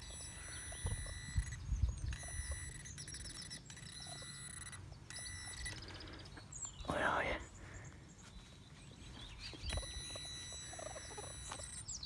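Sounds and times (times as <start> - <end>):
metal detector high tone: 0.0 - 6.2, 9.6 - 12.0
faint bird chirps: 0.0 - 12.0.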